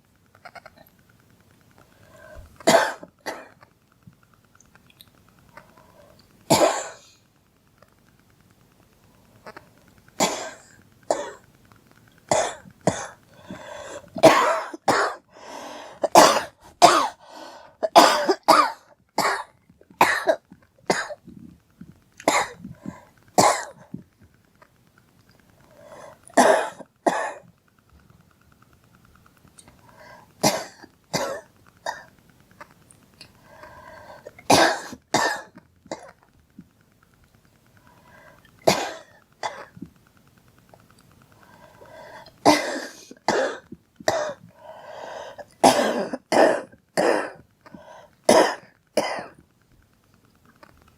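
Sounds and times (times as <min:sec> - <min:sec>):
girl coughing: 0:14.2 - 0:15.2, 0:17.9 - 0:19.4, 0:34.5 - 0:36.1, 0:38.7 - 0:39.7, 0:42.5 - 0:44.4, 0:45.6 - 0:47.4.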